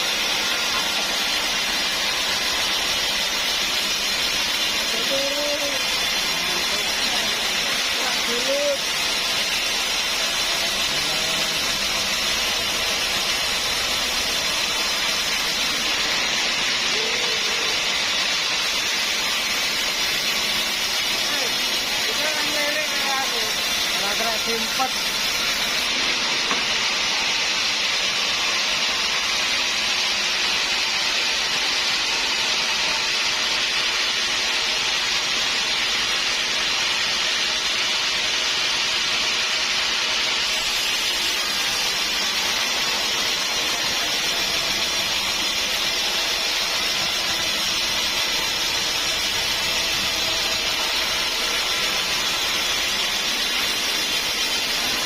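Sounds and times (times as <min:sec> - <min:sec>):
saw blade cutting wood: 0:00.0 - 0:29.8, 0:39.3 - 0:55.0.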